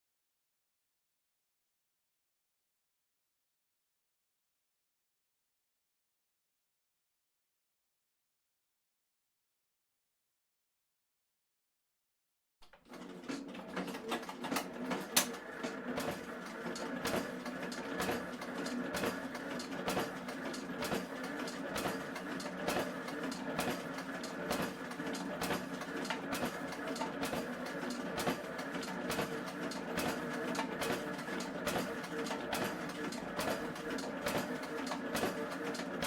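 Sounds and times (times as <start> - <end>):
printing machinery running: 12.9 - 36.0.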